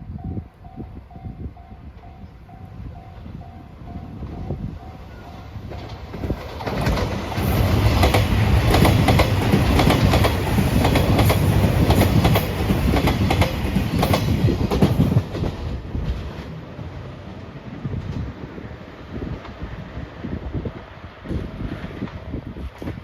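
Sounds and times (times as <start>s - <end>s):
train wheels clacking over rail joints: 5.6s - 16.6s.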